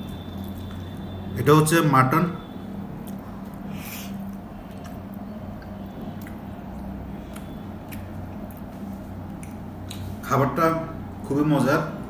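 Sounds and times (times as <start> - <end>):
steady low hum: 0.0 - 12.0
person chewing food: 2.9 - 10.2.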